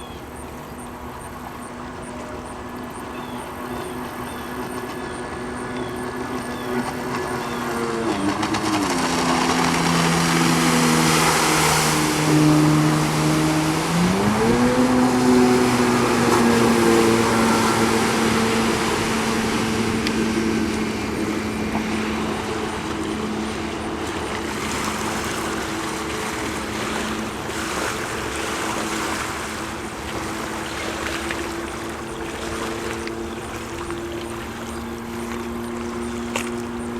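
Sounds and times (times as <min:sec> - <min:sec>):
jet ski engine running: 0:00.0 - 0:36.9
water rushing: 0:00.0 - 0:36.9
wind: 0:00.0 - 0:36.9.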